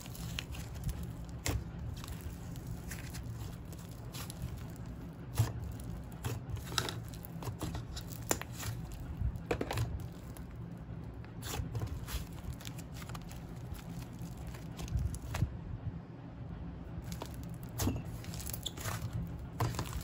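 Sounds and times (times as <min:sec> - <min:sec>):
slime squishing and popping: 0:00.0 - 0:10.6, 0:17.0 - 0:20.0.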